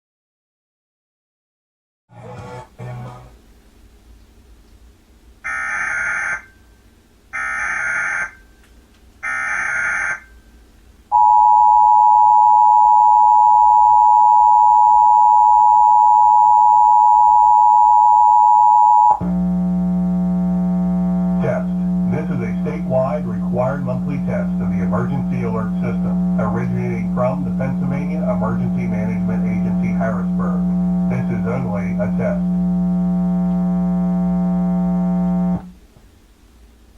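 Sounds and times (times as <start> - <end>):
two-tone attention signal: 11.1 - 35.7
data tone bursts: 11.2 - 35.7
steady low buzz: 17.6 - 36.0.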